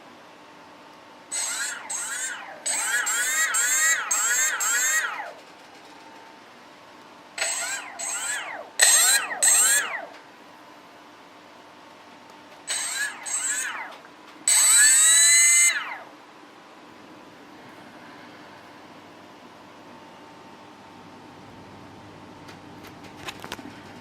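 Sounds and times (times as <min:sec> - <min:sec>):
small electric motor bursts: 0:01.3 - 0:05.5, 0:07.4 - 0:10.2, 0:12.6 - 0:16.1
high whine: 0:01.3 - 0:06.3, 0:07.4 - 0:10.3, 0:12.7 - 0:16.2.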